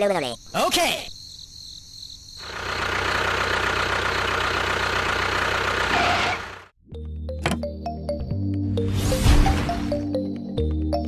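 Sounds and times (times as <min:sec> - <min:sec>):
music: 0:06.8 - 0:11.0.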